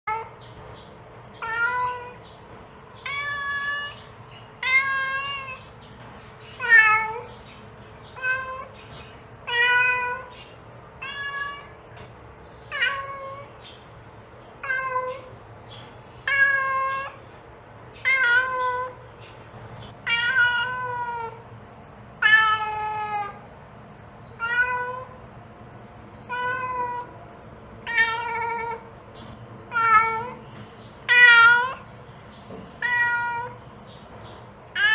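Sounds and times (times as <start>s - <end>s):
cat meowing: 1.4s - 2.2s, 3.0s - 5.7s, 6.6s - 7.3s, 8.1s - 8.8s, 9.4s - 10.3s, 11.0s - 11.9s, 12.7s - 13.6s, 14.6s - 15.3s, 16.2s - 17.2s, 18.0s - 19.0s, 20.0s - 21.4s, 22.2s - 23.4s, 24.3s - 25.2s, 26.2s - 27.1s, 27.8s - 28.9s, 29.6s - 30.4s, 31.0s - 31.9s, 32.8s - 33.6s.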